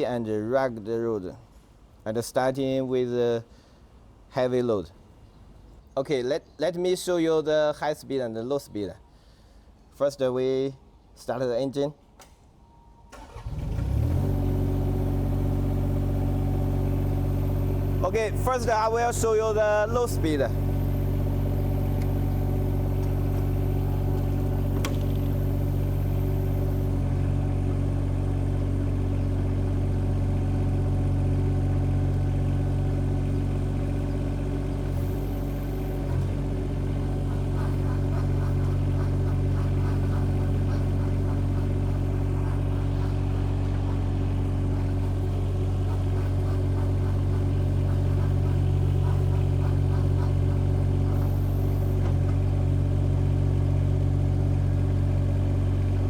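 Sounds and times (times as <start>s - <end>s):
excavator engine running: 13.2s - 56.0s.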